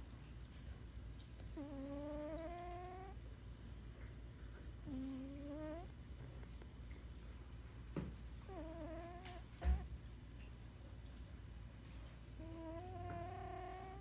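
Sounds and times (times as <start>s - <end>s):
pet snoring with whistles: 12.4s - 14.0s.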